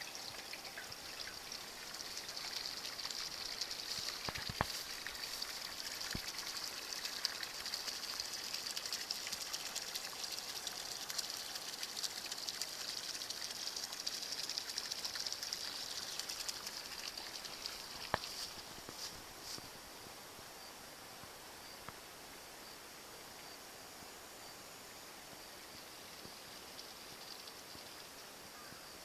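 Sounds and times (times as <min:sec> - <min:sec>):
small water splashes: 0:00.0 - 0:19.7
water running and trickling: 0:00.0 - 0:19.8, 0:26.0 - 0:28.4.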